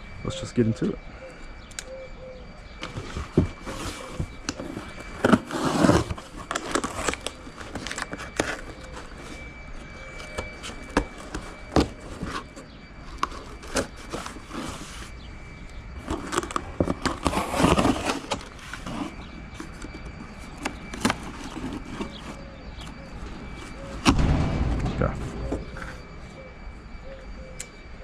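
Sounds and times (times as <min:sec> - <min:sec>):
package scraping and rustling: 0:02.8 - 0:15.3, 0:16.0 - 0:23.9.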